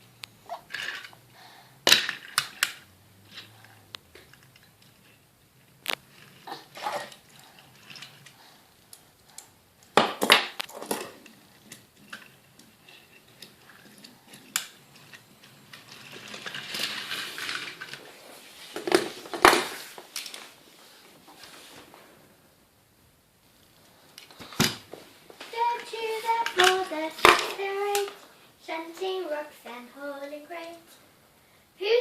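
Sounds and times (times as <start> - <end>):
clicks and knocks of toys: 1.8 - 5.2, 5.8 - 18.1, 18.7 - 20.4, 25.5 - 28.2.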